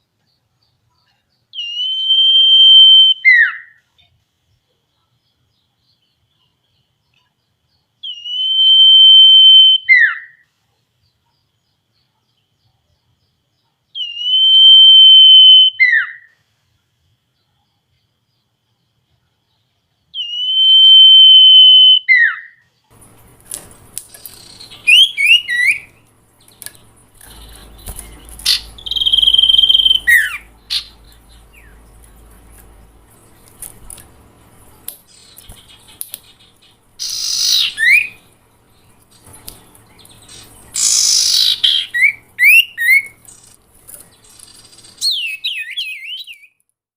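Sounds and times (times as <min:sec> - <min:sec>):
faint low hum: 0:00.0 - 0:45.6
whistled owl note: 0:28.7 - 0:30.9.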